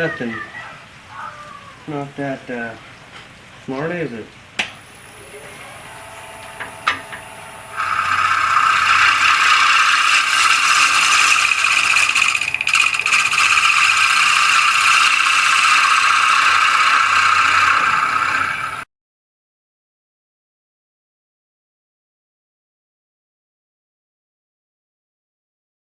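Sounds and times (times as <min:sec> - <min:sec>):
lathe tool scraping wood: 0:05.0 - 0:18.9.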